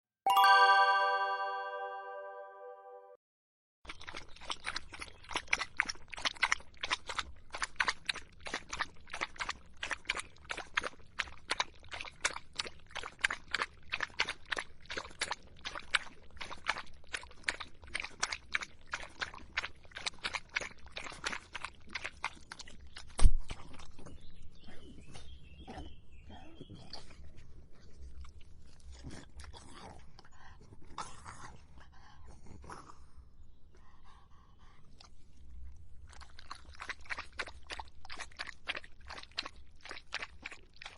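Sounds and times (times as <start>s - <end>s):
dog lapping water: 3.9s - 26.0s, 34.7s - 40.9s.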